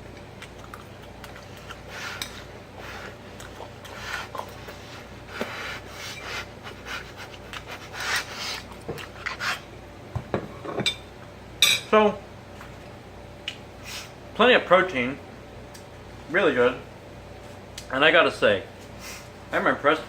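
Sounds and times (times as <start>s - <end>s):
fork scraping while eating: 1.3s - 9.7s.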